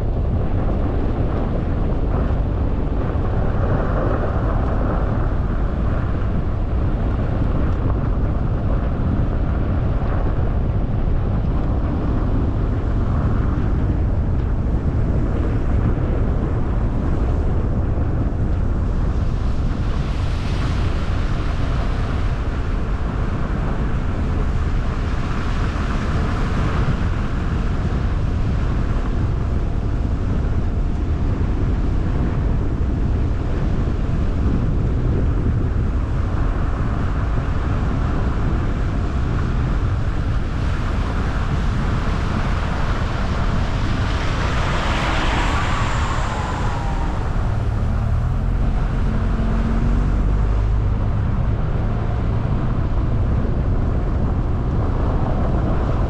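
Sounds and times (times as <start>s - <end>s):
tyre and road noise: 0.0s - 56.0s
wind: 0.0s - 56.0s
short falling whine: 44.0s - 50.9s.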